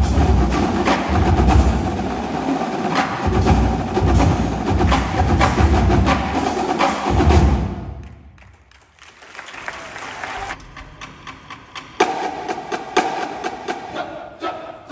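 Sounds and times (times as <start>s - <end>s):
marching drumline playing: 0.0s - 8.5s, 10.7s - 14.0s.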